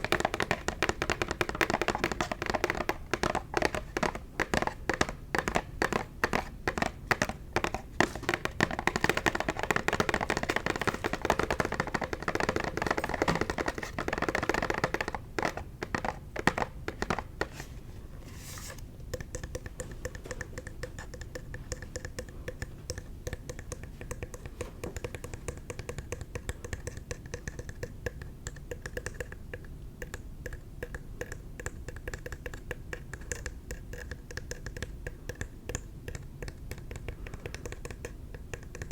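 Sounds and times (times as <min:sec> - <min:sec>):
tapping on plastic container: 0:00.0 - 0:17.6.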